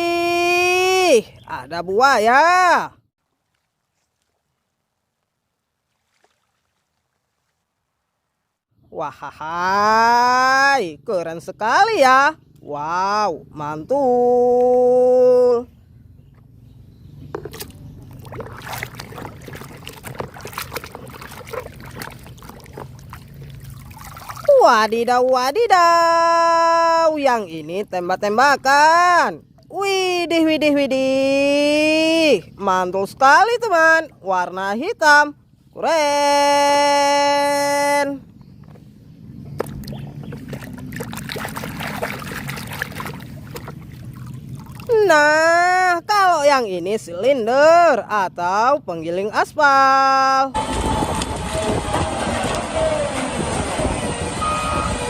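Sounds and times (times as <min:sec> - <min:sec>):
water splashing in a basin: 0:05.8 - 0:07.7, 0:17.3 - 0:25.2, 0:39.6 - 0:45.1.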